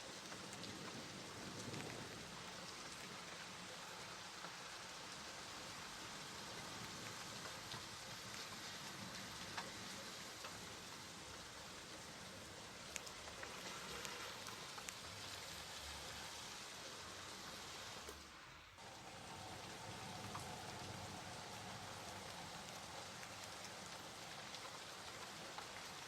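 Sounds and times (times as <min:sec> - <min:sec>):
steady rain falling: 0:00.0 - 0:26.0
raindrop taps: 0:00.2 - 0:03.3, 0:06.4 - 0:15.4, 0:18.9 - 0:26.0.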